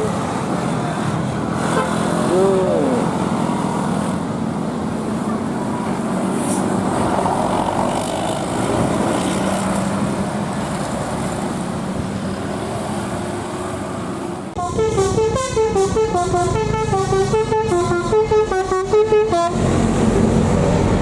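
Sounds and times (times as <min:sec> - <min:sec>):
tyre and road noise: 0:00.0 - 0:21.0
vehicle engine running: 0:14.6 - 0:21.0.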